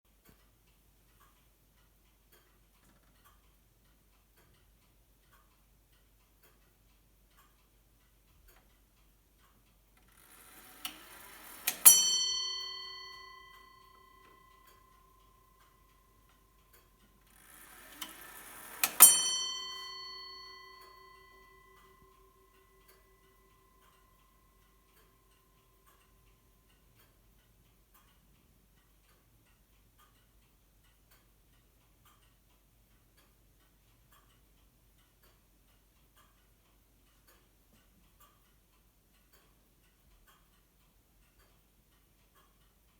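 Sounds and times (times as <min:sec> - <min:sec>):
clock ticking: 0:00.1 - 0:42.9
clock hammer hitting bell: 0:11.3 - 0:14.6, 0:17.8 - 0:22.4.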